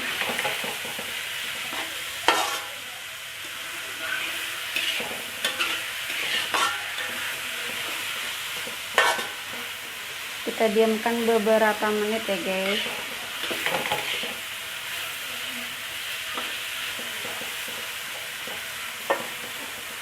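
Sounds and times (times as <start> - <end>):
spatula scraping a pan: 0.0 - 2.8, 3.5 - 10.0, 12.1 - 15.4
vegetables sizzling in oil: 0.0 - 20.0.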